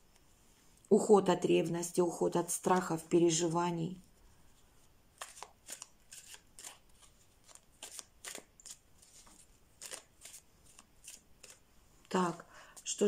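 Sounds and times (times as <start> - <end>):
cards flicking and tapping: 5.2 - 11.6.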